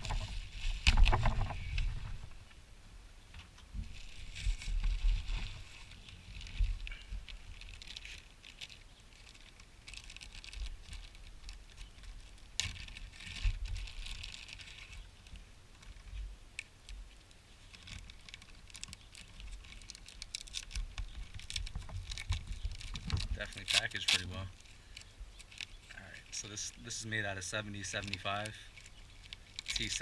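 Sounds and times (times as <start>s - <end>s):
packaging rustling: 3.9s - 15.1s, 17.6s - 30.0s.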